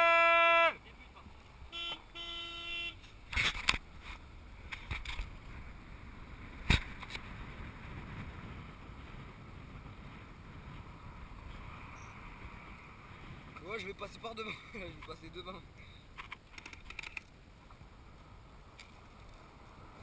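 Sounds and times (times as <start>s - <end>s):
moving car rumble: 0.8s - 20.0s
car horn: 1.7s - 3.0s
wind on microphone: 4.6s - 14.1s.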